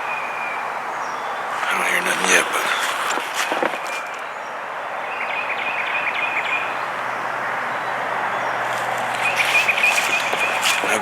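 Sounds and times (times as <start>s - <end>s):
bird trilling: 0.0s - 11.0s
rushing background noise: 0.0s - 11.0s.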